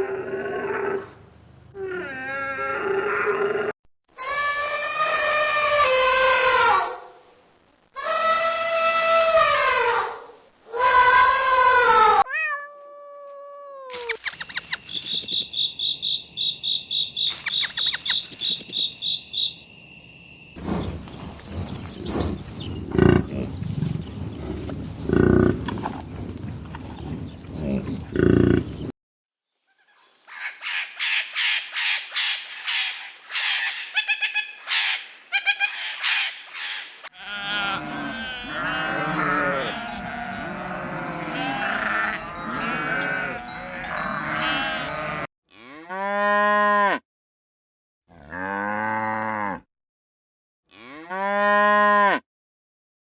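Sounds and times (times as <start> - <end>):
overlapping animal calls: 13.9 - 19.5, 31.1 - 45.3
rapid high-pitched chirping: 14.0 - 20.6
cow mooing: 37.2 - 47.0, 48.1 - 49.6, 50.7 - 52.2.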